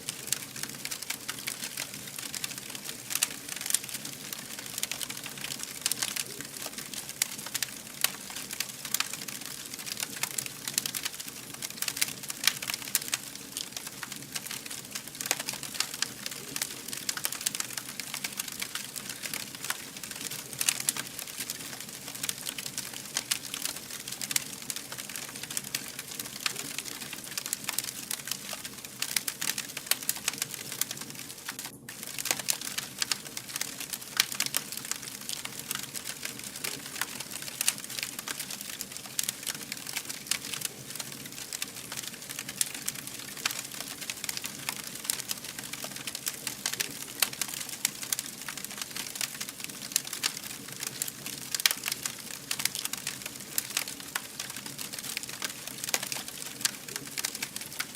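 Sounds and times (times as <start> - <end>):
wood fire crackling and popping: 0.0 - 57.9.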